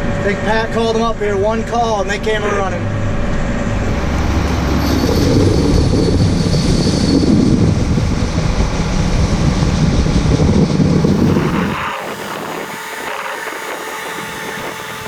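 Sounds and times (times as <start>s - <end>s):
heavy machinery engine rumble: 1.9s - 15.0s
faint high whine: 11.0s - 15.0s.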